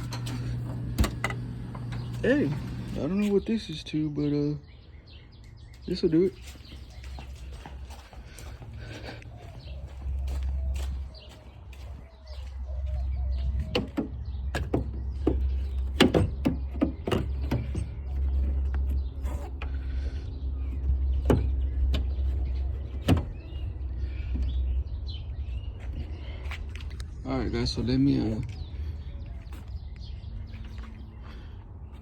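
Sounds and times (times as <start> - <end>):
tool knocking on car trunk lid: 13.6 - 17.9.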